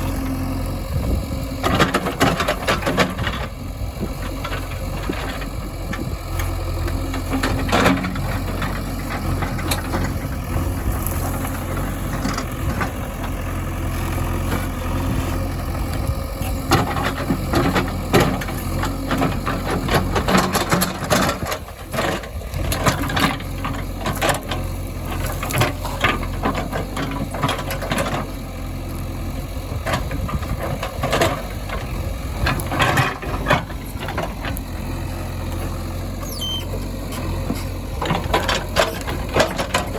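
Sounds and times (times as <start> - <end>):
diesel engines rumbling: 0.0 - 39.9
knocks and clanks: 37.1 - 39.9.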